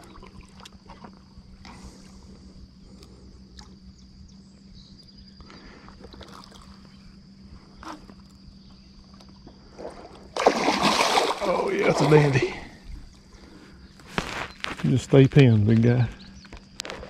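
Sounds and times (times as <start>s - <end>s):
faint high insect drone: 0.0s - 17.0s
low hum: 0.0s - 17.0s
loud water splash: 10.4s - 12.5s.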